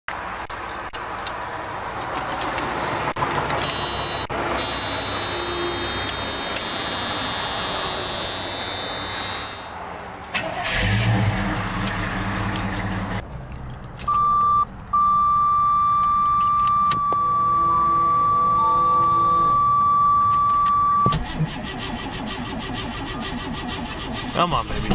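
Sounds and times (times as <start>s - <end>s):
car door warning chime: 3.6s - 9.8s, 14.1s - 21.2s.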